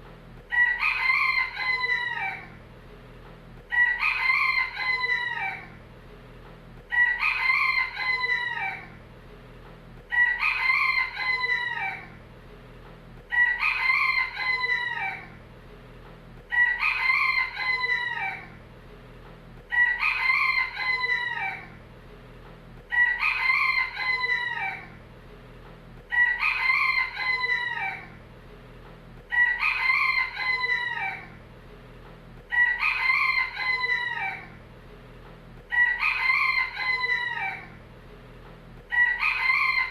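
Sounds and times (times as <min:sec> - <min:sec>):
rooster crowing: 0:00.5 - 0:02.6, 0:03.7 - 0:05.8, 0:06.9 - 0:09.0, 0:10.1 - 0:12.2, 0:13.3 - 0:15.4, 0:16.5 - 0:18.6, 0:19.7 - 0:21.8, 0:22.9 - 0:25.0, 0:26.1 - 0:28.2, 0:29.3 - 0:31.4, 0:32.5 - 0:34.6, 0:35.7 - 0:37.8, 0:38.9 - 0:39.9.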